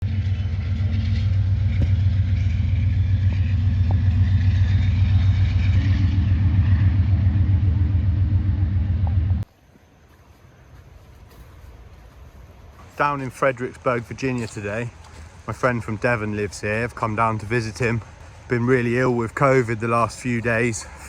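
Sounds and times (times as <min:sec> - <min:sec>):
car rumbling in motion: 0:00.0 - 0:09.5.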